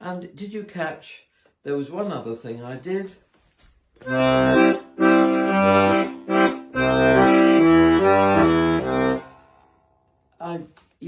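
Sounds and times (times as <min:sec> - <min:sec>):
accordion bass and chords: 0:04.0 - 0:09.9.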